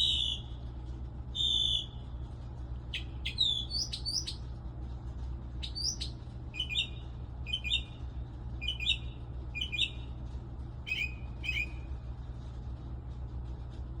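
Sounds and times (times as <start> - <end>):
steady low hum: 0.0 - 14.0
bird chirping: 3.0 - 4.4, 5.6 - 8.0, 8.6 - 10.1, 10.9 - 11.9.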